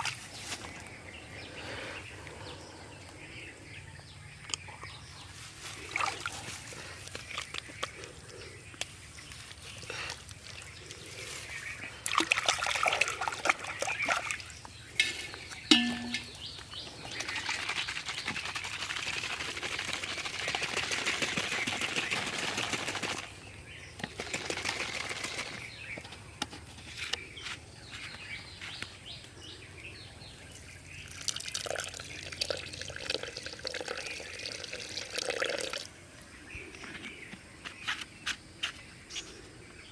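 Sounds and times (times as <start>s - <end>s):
water splashing and pouring: 5.8s - 6.6s, 11.9s - 14.6s.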